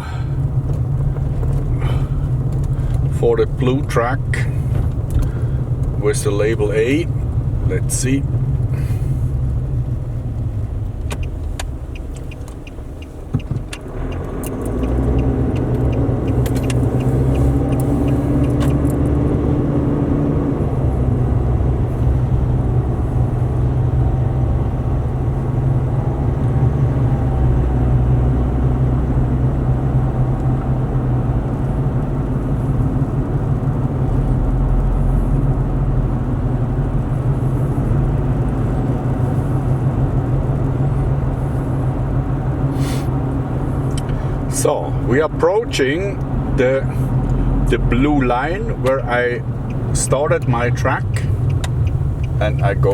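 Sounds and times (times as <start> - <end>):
road noise: 0.0 - 52.9
vehicle engine running: 0.0 - 52.9
sharp clicks: 11.0 - 19.2, 49.6 - 52.7.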